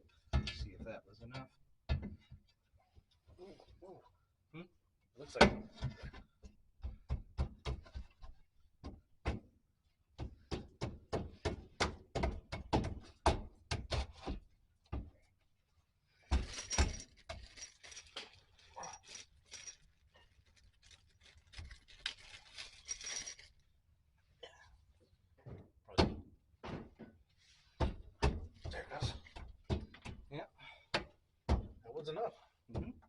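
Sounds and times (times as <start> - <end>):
metal rattling and clinking: 16.3 - 23.6.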